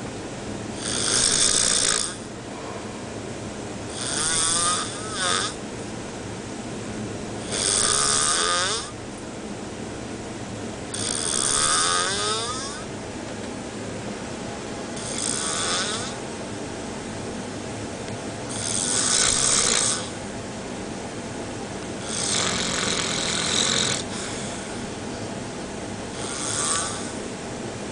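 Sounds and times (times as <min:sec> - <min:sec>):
steady low hum: 0:00.0 - 0:27.9
person snoring: 0:00.8 - 0:02.3, 0:03.9 - 0:05.6, 0:07.4 - 0:09.0, 0:10.9 - 0:12.9, 0:15.0 - 0:16.2, 0:18.5 - 0:20.2, 0:22.0 - 0:24.7, 0:26.2 - 0:27.2.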